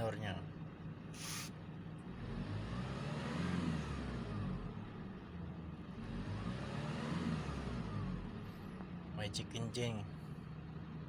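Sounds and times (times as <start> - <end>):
diesel engine idling and revving: 0.0 - 11.0
short hiss: 1.2 - 1.5.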